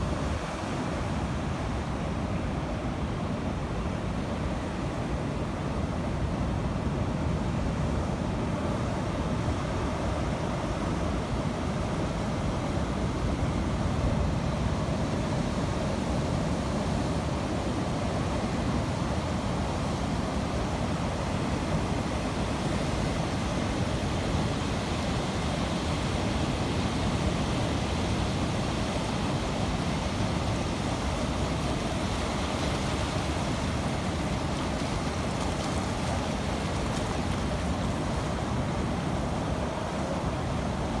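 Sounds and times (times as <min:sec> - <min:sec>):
sea rushing: 0:17.2 - 0:41.0.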